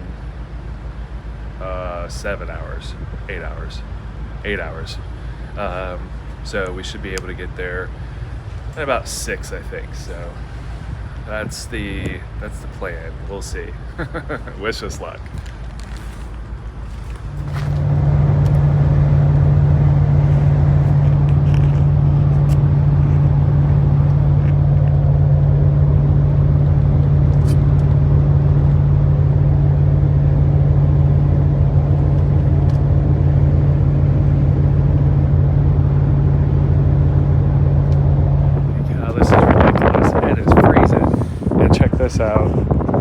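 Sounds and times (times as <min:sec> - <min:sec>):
vehicle engine running: 0:00.0 - 0:43.0.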